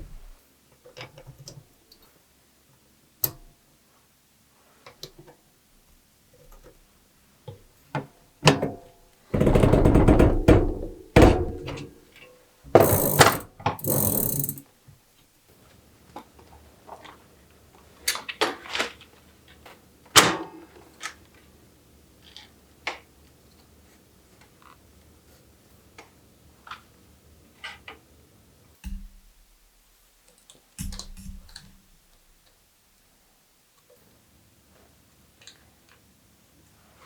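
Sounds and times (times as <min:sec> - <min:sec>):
metal tools and bicycle parts clicking: 0:12.8 - 0:14.6.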